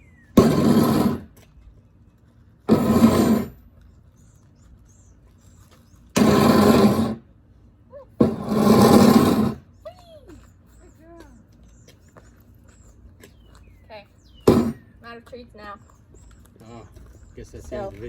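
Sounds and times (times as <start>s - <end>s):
faint bird chirps: 0.0s - 0.4s
loud rough scraping bursts: 0.4s - 1.4s, 2.7s - 3.6s, 6.2s - 7.3s, 8.2s - 9.7s, 14.4s - 14.9s.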